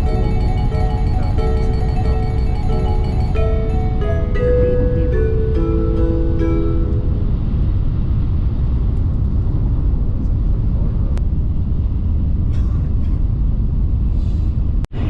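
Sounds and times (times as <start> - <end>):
train rumble inside carriage: 7.3 - 14.9.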